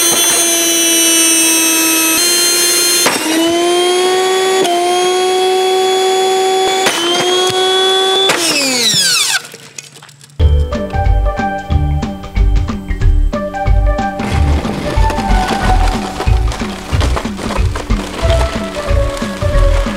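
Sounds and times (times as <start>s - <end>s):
vacuum cleaner motor whining: 0.0s - 9.4s
music with a beat: 10.4s - 19.9s.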